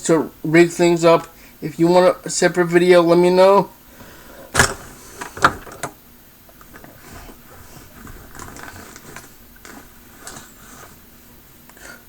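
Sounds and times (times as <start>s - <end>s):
bag rustling: 6.5s - 12.0s.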